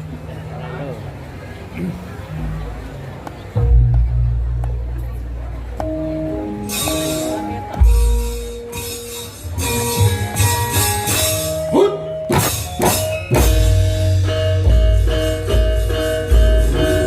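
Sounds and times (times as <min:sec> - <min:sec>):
drum strokes: 0:05.8 - 0:17.0
ringing pitched notes: 0:05.8 - 0:17.0.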